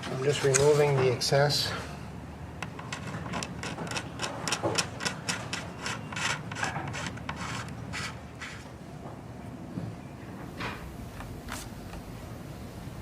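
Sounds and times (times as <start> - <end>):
scraper blade scraping: 2.7 - 8.7.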